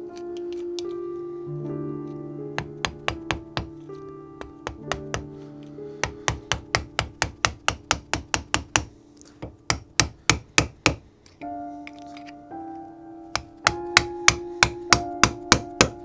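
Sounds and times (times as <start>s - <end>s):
background music: 0.0s - 16.0s
hammer striking steel chisel: 2.6s - 3.8s, 4.4s - 5.3s, 6.0s - 12.3s, 13.3s - 16.0s.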